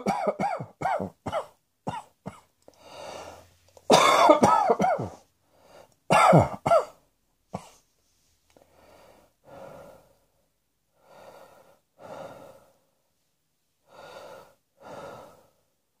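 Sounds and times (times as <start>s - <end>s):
person breathing faintly: 2.7s - 3.7s, 7.7s - 13.2s, 13.8s - 15.8s.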